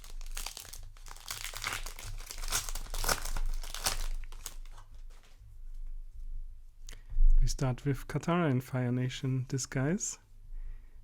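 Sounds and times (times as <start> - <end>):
foil wrapper crinkling and tearing: 0.0 - 5.3.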